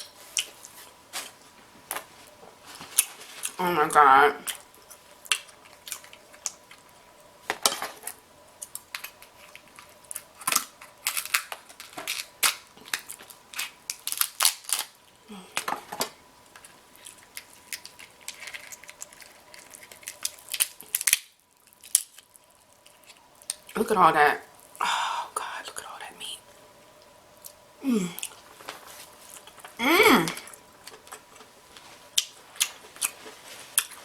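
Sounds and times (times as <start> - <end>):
crab shells cracking: 4.5 - 23.8, 32.1 - 34.0.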